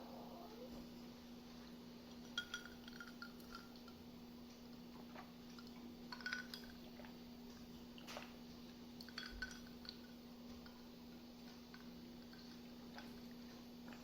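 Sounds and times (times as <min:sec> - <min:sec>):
steady low hum: 0:00.0 - 0:14.0
faint light clinking: 0:02.2 - 0:04.0.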